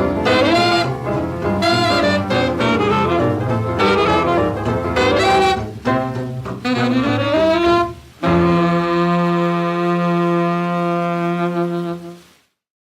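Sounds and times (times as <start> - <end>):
horns playing rhythm and blues: 0.0 - 12.3.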